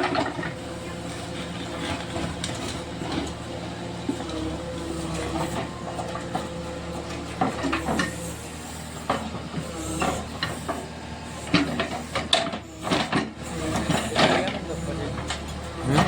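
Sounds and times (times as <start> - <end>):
diesel engine running: 0.0 - 16.0
sharp knocks and clatter: 11.5 - 14.6.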